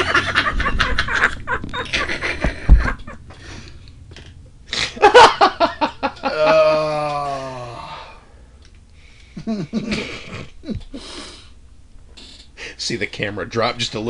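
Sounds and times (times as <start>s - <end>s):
men laughing hard: 0.0s - 3.6s, 4.8s - 7.7s, 9.4s - 11.0s
long falling vocal sound: 6.2s - 8.4s.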